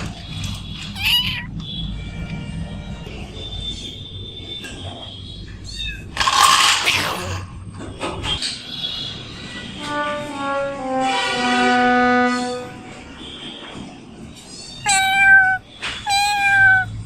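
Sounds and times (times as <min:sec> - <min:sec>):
cat meowing: 0:00.9 - 0:01.6, 0:05.6 - 0:07.5, 0:14.6 - 0:17.0
descending brass-like comic notes: 0:09.8 - 0:12.9.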